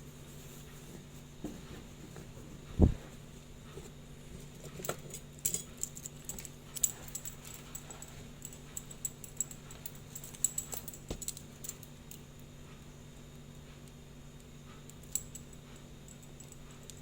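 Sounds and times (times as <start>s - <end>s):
steady low hum: 0.0s - 17.0s
metal tools clicking and tapping: 4.6s - 11.9s.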